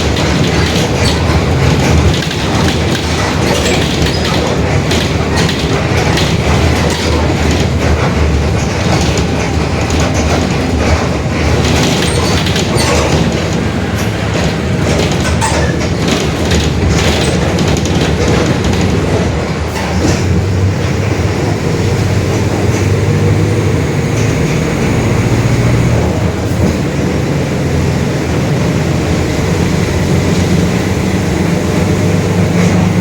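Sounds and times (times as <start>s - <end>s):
body rattles and clicks: 0.0s - 23.1s
bus diesel engine droning: 0.0s - 33.0s.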